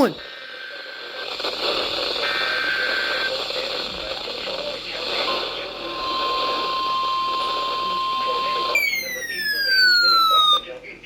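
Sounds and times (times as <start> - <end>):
hissy radio signal: 0.0 - 11.0
radio warning alarm tone: 5.3 - 10.7.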